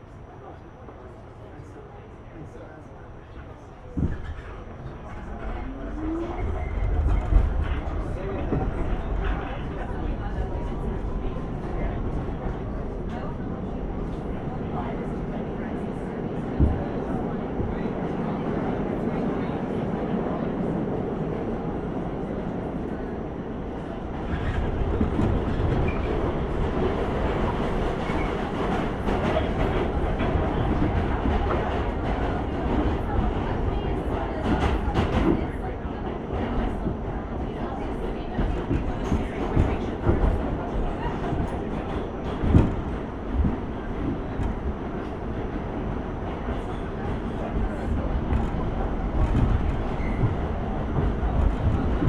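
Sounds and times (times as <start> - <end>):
subway train rumble: 0.0 - 52.0.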